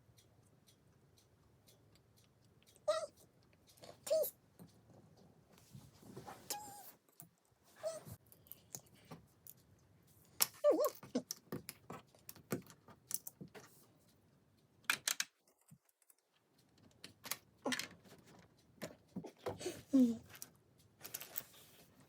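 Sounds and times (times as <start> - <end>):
plastic bricks clicking: 14.9 - 15.3.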